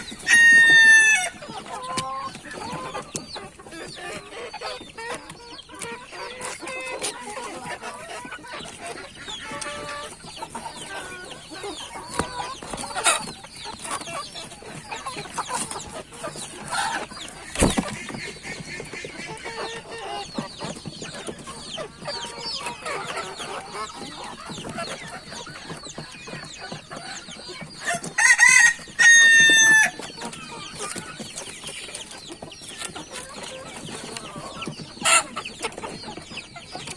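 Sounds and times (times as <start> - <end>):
chickens clucking: 0.0 - 36.9
rooster crowing: 28.2 - 30.0.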